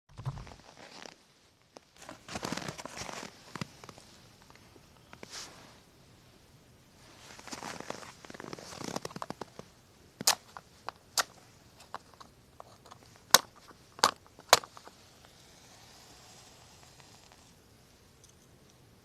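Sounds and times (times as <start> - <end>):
dry wood crackling and snapping: 7.5 - 14.9.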